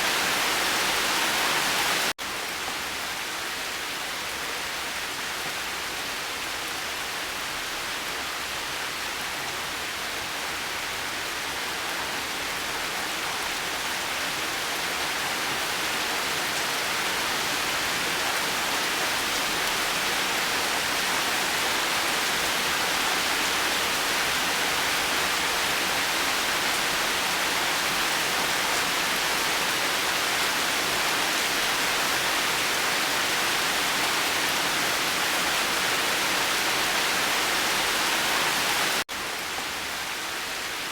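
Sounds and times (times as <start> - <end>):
heavy rain in a forest: 0.0 - 40.9.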